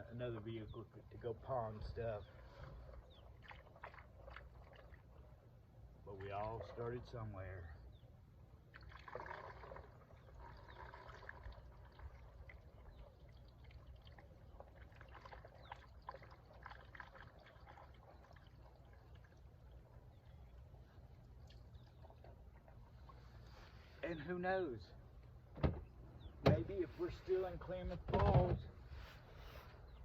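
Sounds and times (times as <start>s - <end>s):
low steady hum: 0.0s - 30.0s
gasoline trickling and pouring: 8.8s - 23.2s.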